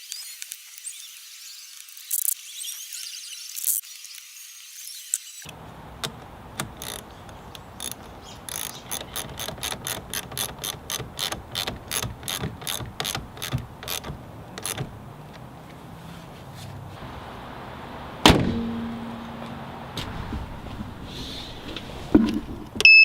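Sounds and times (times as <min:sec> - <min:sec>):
ratchet clicking: 0:06.0 - 0:15.0.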